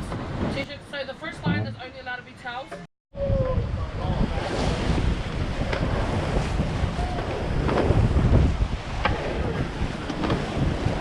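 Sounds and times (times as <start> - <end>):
wind buffeting microphone: 3.1 - 11.0
rushing sea water: 3.2 - 11.0.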